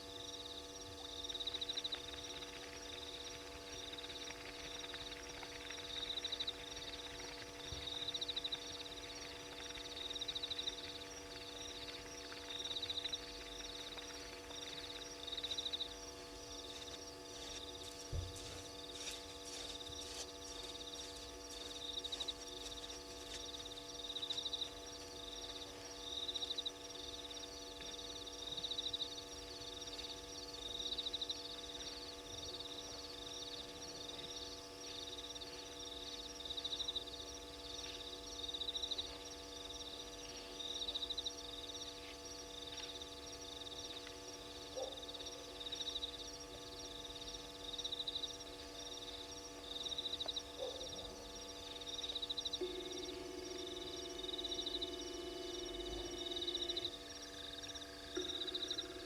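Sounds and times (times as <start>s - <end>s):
steady electrical hum: 0.0s - 59.0s
high-pitched pulsed animal trills: 19.0s - 59.0s.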